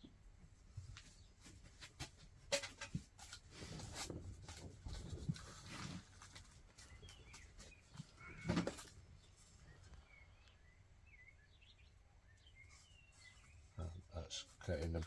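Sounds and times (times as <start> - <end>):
faint bird chirps: 6.8 - 14.5.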